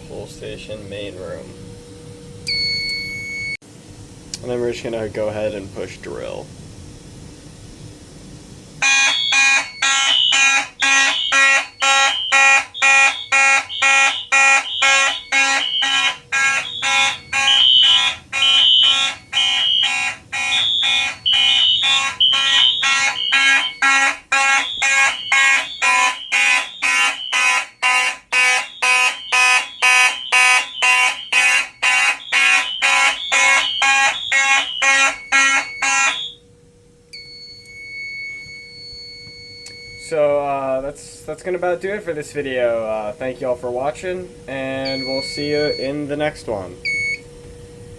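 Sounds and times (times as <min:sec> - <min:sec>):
fire alarm horns pulsing: 0:08.8 - 0:36.6, 0:43.6 - 0:47.2.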